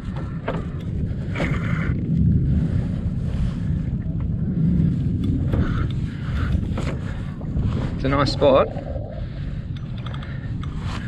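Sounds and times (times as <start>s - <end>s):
water lapping against a kayak hull: 0.0s - 11.0s
wind buffeting the microphone: 0.0s - 11.0s.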